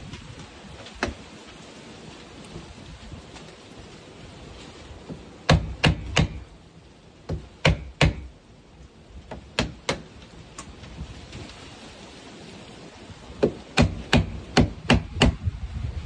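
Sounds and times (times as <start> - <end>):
tool striking wood: 5.1 - 6.5, 7.3 - 8.3, 9.3 - 10.1, 13.4 - 15.4.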